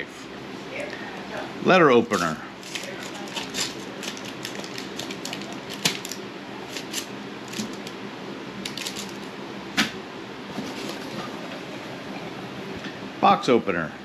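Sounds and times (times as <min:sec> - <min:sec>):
knife slitting paper envelope: 0:02.6 - 0:07.9.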